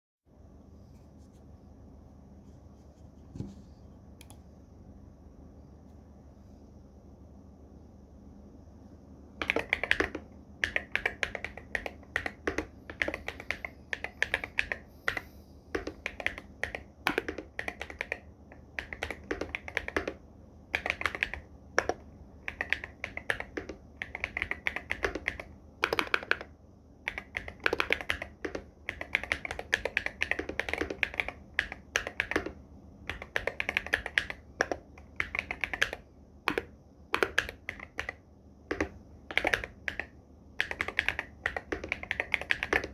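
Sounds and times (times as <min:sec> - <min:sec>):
fast typing on mechanical keyboard: 0:09.4 - 0:42.9.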